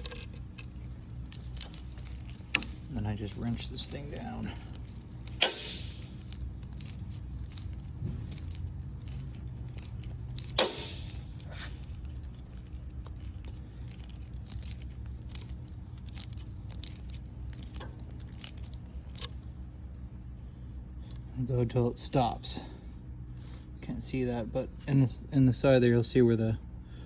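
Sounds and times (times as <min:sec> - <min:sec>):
wrench clicking and scraping on metal: 0:00.0 - 0:19.4.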